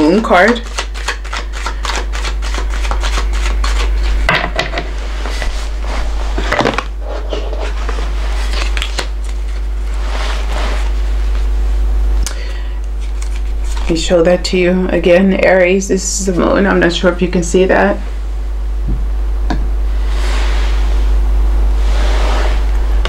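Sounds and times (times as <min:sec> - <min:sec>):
steady low hum: 0:00.0 - 0:23.0
cards rustling and clicking: 0:00.4 - 0:04.2, 0:06.6 - 0:09.7, 0:12.8 - 0:13.9.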